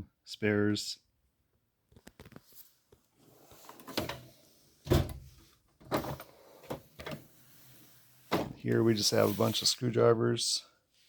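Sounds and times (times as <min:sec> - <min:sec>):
metal drawers sliding: 0:03.3 - 0:08.6
metal drawer shutting thud: 0:04.9 - 0:05.3, 0:08.3 - 0:08.6.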